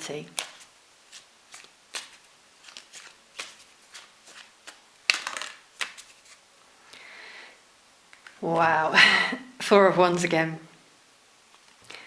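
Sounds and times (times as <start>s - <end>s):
cards tapping and flicking: 0.3s - 6.4s.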